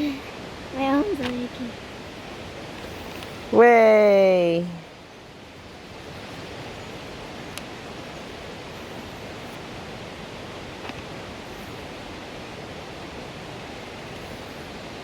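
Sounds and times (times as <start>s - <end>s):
rushing water: 0.0s - 15.0s
faint clicks: 7.5s - 7.7s.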